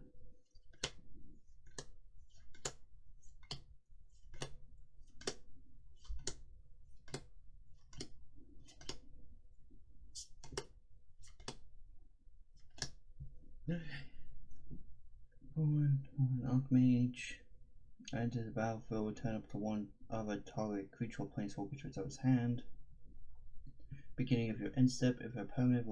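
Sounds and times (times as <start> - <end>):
trading cards snapping: 0.6 - 9.1, 10.2 - 11.7, 12.6 - 13.0.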